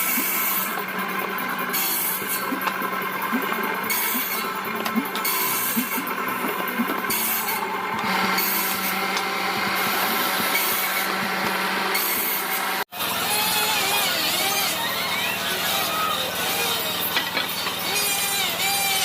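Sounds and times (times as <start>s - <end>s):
power woodworking tool on hardwood: 7.1s - 19.0s.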